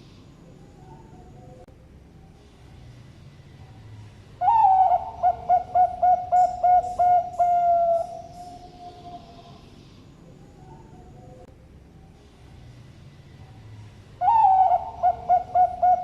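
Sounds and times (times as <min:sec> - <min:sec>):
dove cooing: 0:04.4 - 0:09.6, 0:14.2 - 0:16.0.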